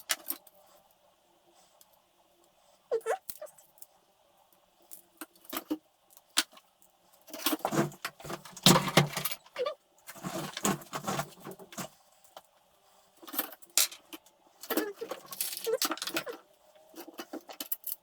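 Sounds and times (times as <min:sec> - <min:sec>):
small metal parts rattling: 0:07.2 - 0:09.5, 0:13.2 - 0:18.0.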